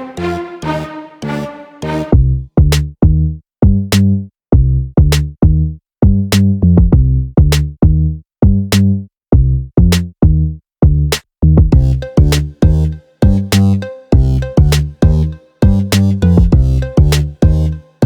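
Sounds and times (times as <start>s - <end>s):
electronic music with drum-machine beat: 11.8s - 18.0s.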